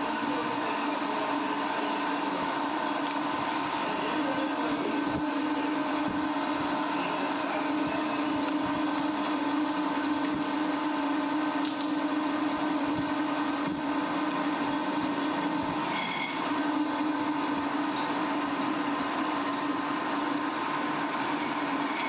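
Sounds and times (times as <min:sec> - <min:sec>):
workshop machine humming: 0:00.0 - 0:22.0.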